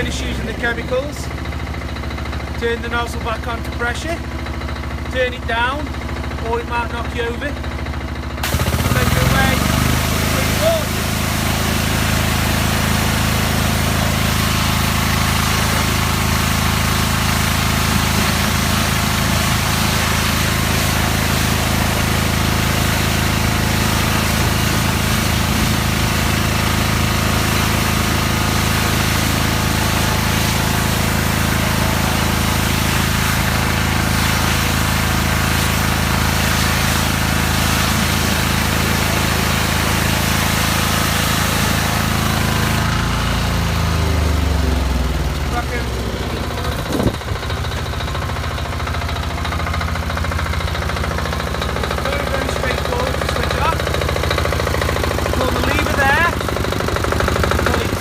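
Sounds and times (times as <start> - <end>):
pressure washer engine running: 0.0 - 58.0
high-pressure water jet hissing: 8.4 - 49.7, 50.4 - 58.0.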